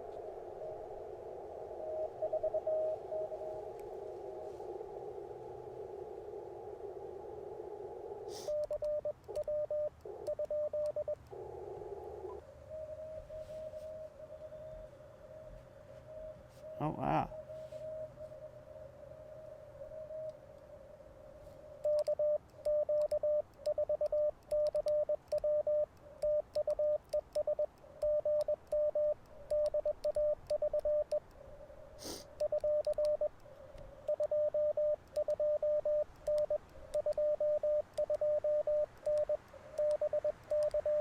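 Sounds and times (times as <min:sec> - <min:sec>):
morse code tone: 0:08.5 - 0:11.2, 0:21.8 - 0:31.2, 0:32.4 - 0:33.3, 0:34.1 - 0:41.0.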